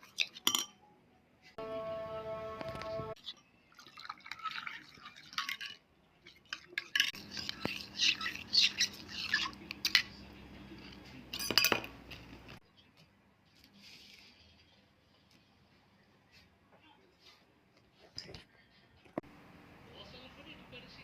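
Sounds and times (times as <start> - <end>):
utensils and dishes clinking: 0.0 - 0.8, 6.4 - 10.2, 10.8 - 12.3.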